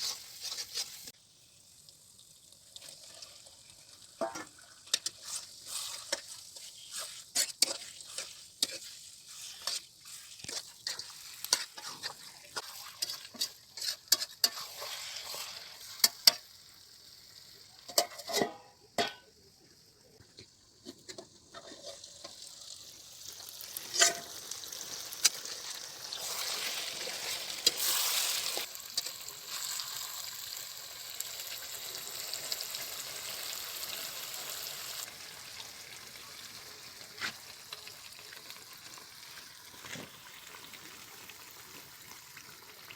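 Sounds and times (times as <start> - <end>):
spatula scraping frying pan: 0.0 - 1.2, 4.2 - 16.5, 17.9 - 19.2, 20.8 - 22.4, 23.8 - 29.7
food sizzling: 0.0 - 42.9.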